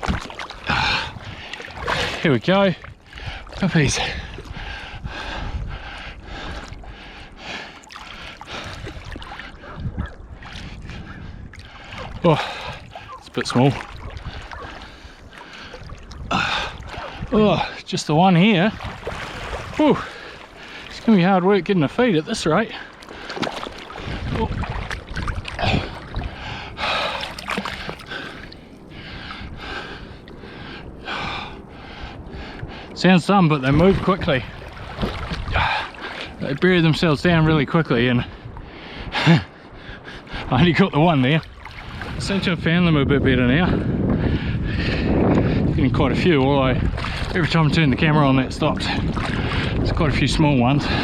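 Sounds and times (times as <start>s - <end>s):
seawater sloshing and splashing: 0.0s - 38.7s, 41.0s - 42.7s, 46.6s - 51.0s
man breathing hard: 0.6s - 2.2s, 3.1s - 13.2s, 14.2s - 17.9s, 25.6s - 33.0s, 35.5s - 36.4s, 38.3s - 40.5s, 43.8s - 45.8s.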